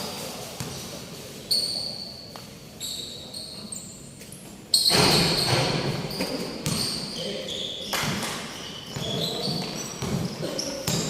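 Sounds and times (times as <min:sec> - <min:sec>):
shoe squeaks on court: 0:00.6 - 0:11.0
basketball bouncing: 0:06.6 - 0:07.0, 0:08.0 - 0:11.0.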